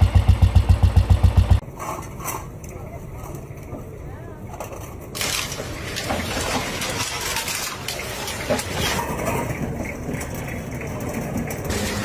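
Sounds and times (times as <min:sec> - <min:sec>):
engine running steadily: 0:00.0 - 0:01.6
outdoor background noise: 0:00.0 - 0:12.0.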